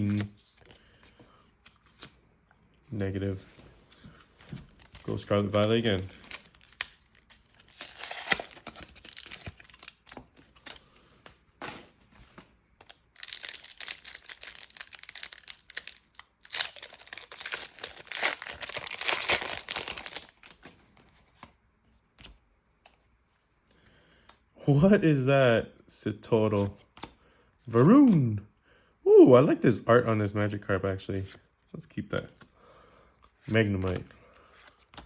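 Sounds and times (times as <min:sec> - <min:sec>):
packaging tearing and crinkling: 0:04.8 - 0:10.2, 0:12.9 - 0:20.7.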